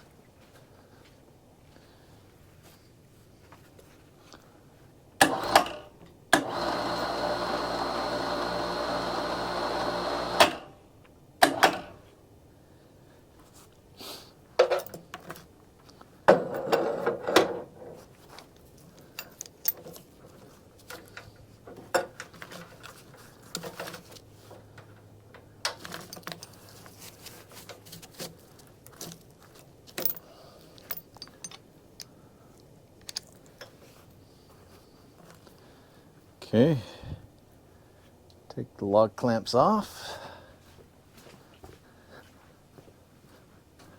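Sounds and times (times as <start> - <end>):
metal clanks and rattles: 16.3 - 18.0, 29.9 - 31.7.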